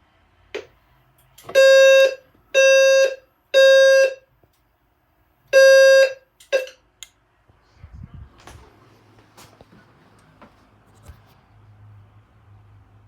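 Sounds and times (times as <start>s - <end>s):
fire alarm sounder blasts: 1.5s - 4.2s, 5.6s - 6.7s.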